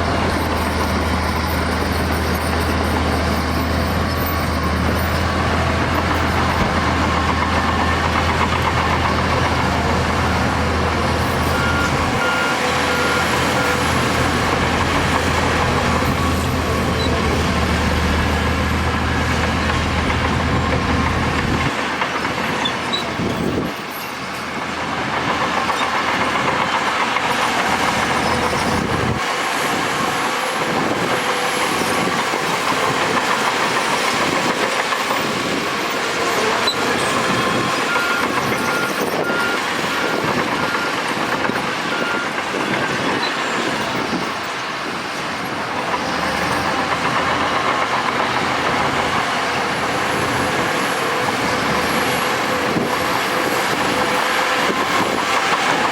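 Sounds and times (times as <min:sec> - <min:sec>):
bulldozer diesel engine under load: 0:00.0 - 0:55.9
steel tracks clattering: 0:00.0 - 0:55.9
reversing alarm beeping: 0:10.3 - 0:17.3, 0:36.6 - 0:43.3.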